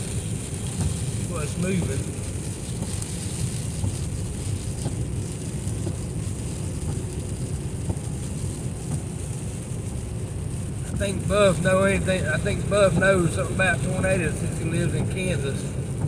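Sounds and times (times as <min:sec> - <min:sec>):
road and tyre noise in car: 0:00.0 - 0:16.0.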